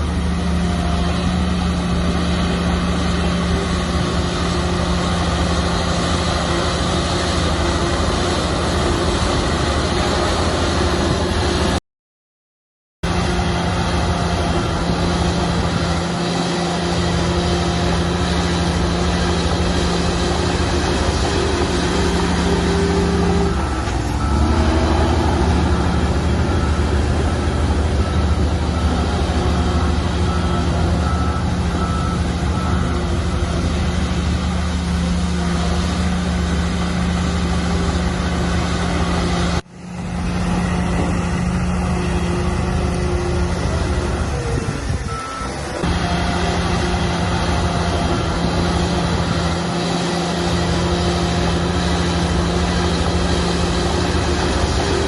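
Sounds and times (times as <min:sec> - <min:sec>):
bulldozer diesel engine running: 0:00.0 - 0:11.8, 0:13.0 - 0:55.0
reversing alarm beeping: 0:14.8 - 0:34.2, 0:41.0 - 0:55.0.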